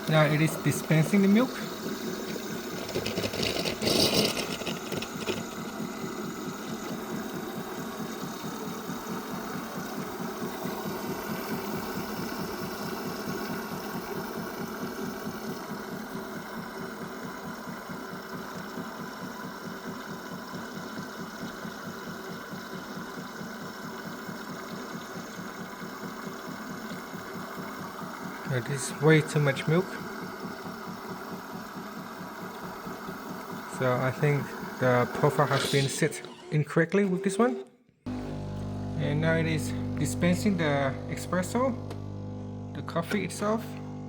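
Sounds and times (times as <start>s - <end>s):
milk frothing hiss: 0.0s - 16.7s
coffee machine pump buzzing: 0.0s - 44.0s.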